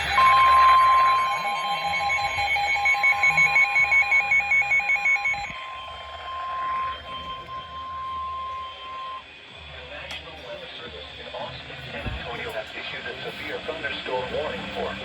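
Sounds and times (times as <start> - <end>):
pulsing electronic beep: 0.0 - 9.3
steady high alert tone: 0.0 - 9.4.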